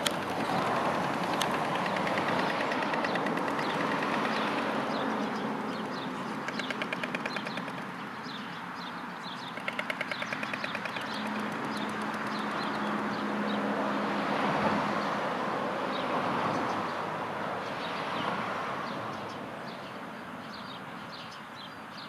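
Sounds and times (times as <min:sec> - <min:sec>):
storks clattering bills: 0:00.0 - 0:08.0, 0:09.4 - 0:13.0
road traffic: 0:00.0 - 0:22.0.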